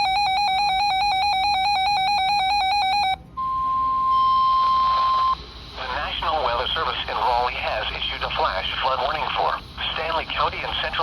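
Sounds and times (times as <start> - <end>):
steady warning tone: 0.0 - 11.0
radio hiss: 5.0 - 11.0.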